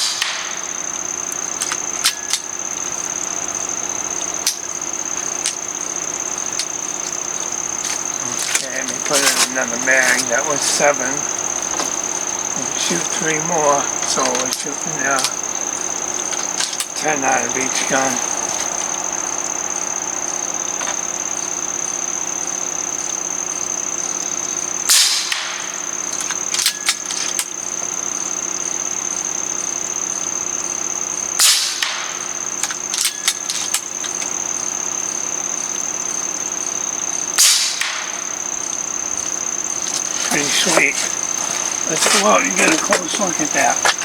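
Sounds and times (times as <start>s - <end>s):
air rifle shot crack: 37.4s - 38.3s.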